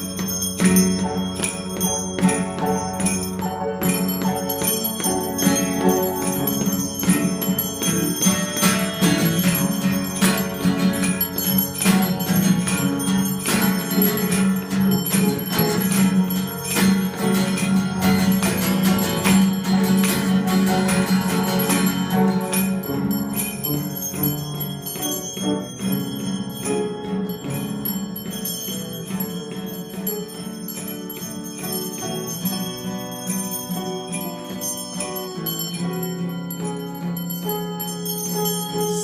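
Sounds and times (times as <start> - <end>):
low bell ringing: 0.0 - 39.0
small church bells ringing rapidly: 0.0 - 39.0.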